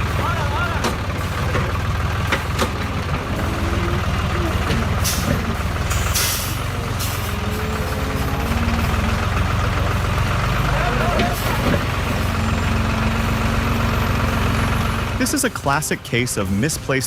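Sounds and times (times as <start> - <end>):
heavy vehicle engine droning: 0.0 - 17.0
air hiss bursts: 5.9 - 7.1.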